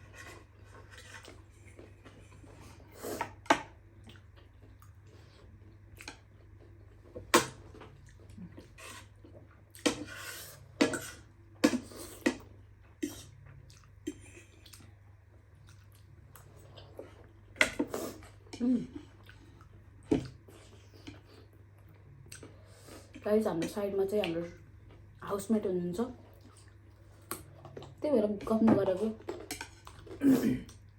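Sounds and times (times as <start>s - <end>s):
chewing: 12.2s - 15.0s, 15.6s - 23.2s, 26.2s - 28.0s, 29.2s - 30.9s.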